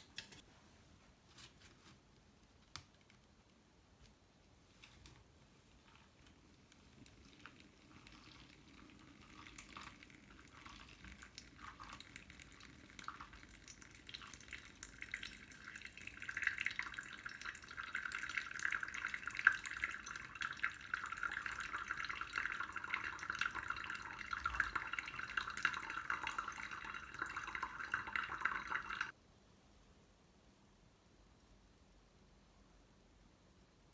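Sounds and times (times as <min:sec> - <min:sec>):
water trickling and dripping: 0:06.4 - 0:29.2.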